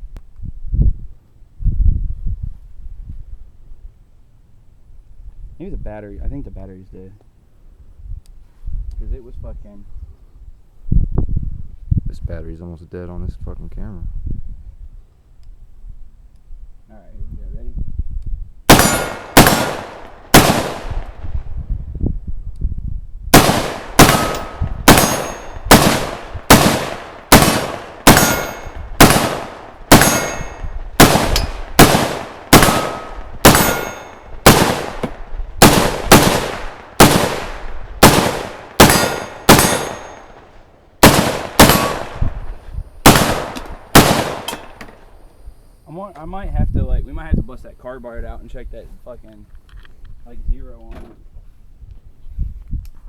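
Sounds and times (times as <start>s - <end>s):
gunshots with ringing tail: 18.7s - 21.4s, 23.3s - 42.4s, 43.0s - 44.8s.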